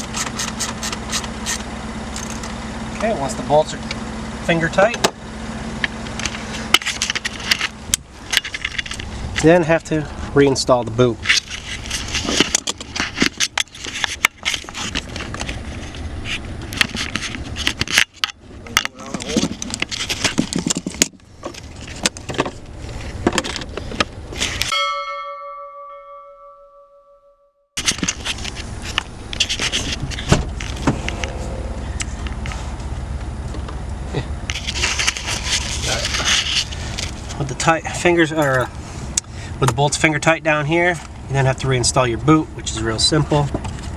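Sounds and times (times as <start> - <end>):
plastic parts scraping and clicking: 11.2 - 24.7, 27.8 - 31.3
steady low rumble: 27.8 - 42.9.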